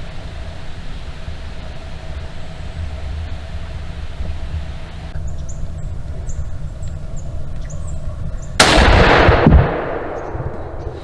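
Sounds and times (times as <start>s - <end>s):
gunshot: 8.6s - 11.0s.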